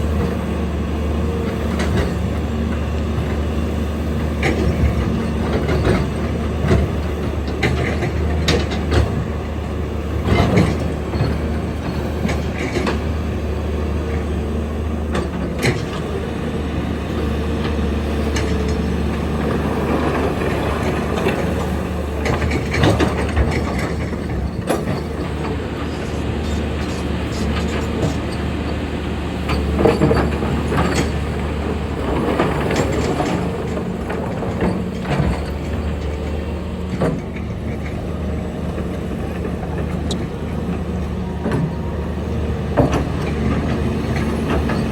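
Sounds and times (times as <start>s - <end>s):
excavator diesel engine: 0.0s - 44.9s.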